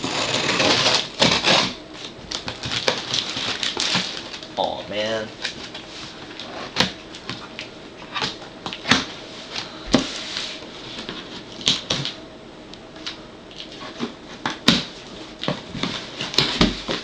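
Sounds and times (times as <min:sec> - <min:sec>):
cardboard carton being opened: 0:00.0 - 0:01.8
packing material rustling: 0:00.0 - 0:04.5.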